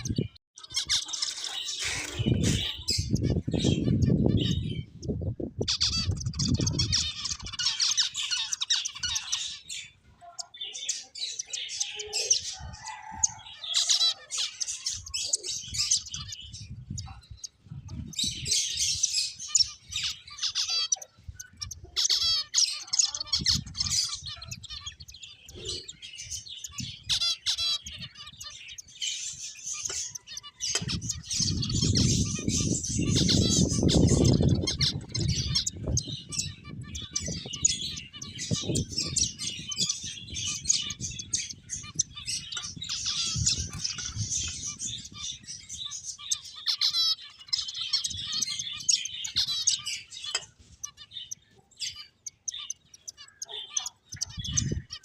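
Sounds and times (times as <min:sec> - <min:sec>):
finches chirping and squawking: 0:00.0 - 0:55.0.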